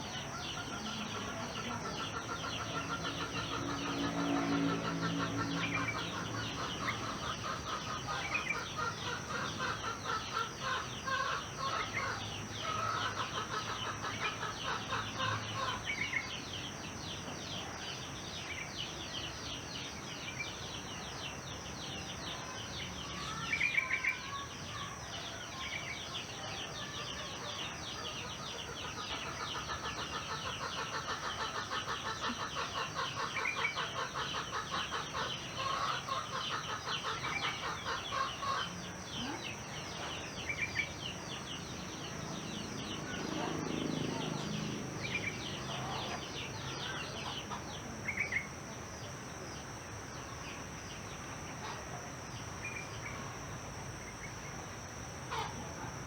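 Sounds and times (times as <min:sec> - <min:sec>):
chickens clucking and calling: 0:00.0 - 0:16.3, 0:27.0 - 0:49.0, 0:54.8 - 0:56.0
small birds chirping: 0:00.0 - 0:56.0.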